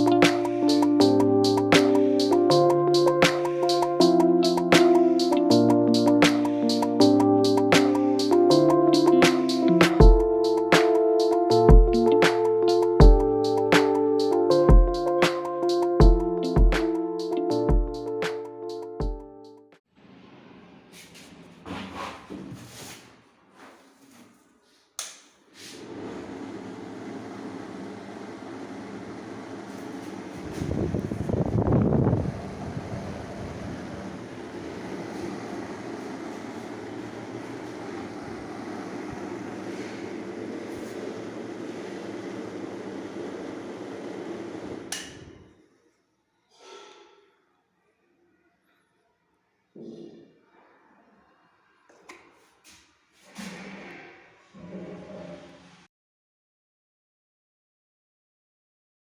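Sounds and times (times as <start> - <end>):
exhaust fan running: 25.8 - 45.3
fan switch click: 44.9 - 45.4.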